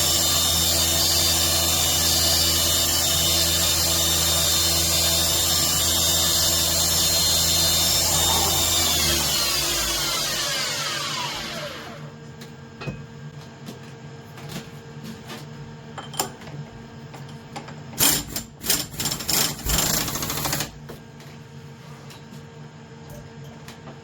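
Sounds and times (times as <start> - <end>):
spindle winding down whine: 5.5 - 12.1.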